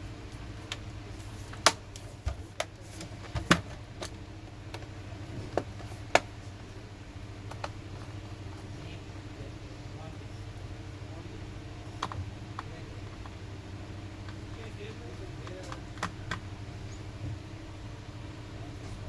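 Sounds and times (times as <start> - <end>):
steady low hum: 0.0 - 19.0
plastic and metal parts clicking: 12.0 - 13.4, 15.4 - 16.5.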